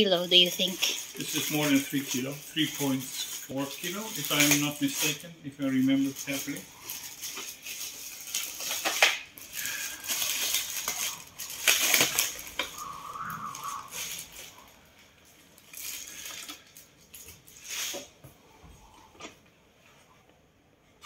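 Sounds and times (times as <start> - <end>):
packaging rustling and crinkling: 0.4 - 18.2.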